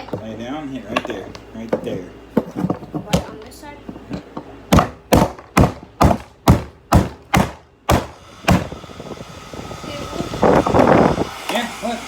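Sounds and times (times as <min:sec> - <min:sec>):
hammer hitting hair dryer: 0:04.8 - 0:08.9, 0:09.8 - 0:12.0.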